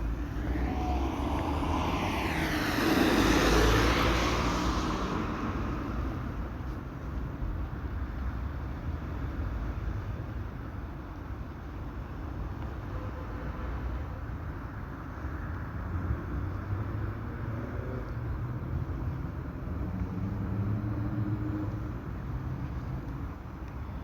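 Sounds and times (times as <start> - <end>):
vehicle engine rising in pitch: 0.0 - 6.6
rumble of passing vehicles: 0.0 - 24.0.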